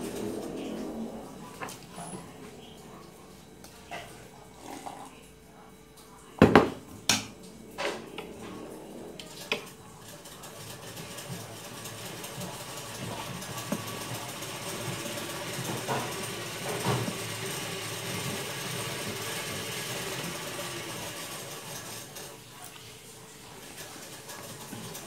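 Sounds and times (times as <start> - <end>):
small motor running: 10.4 - 22.2.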